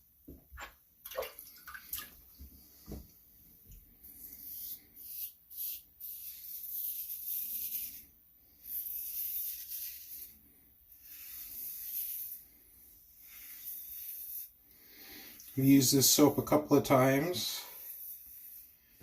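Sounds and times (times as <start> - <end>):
razor scraping through lather: 8.6 - 10.4, 11.0 - 12.6, 13.2 - 15.8, 17.0 - 19.0.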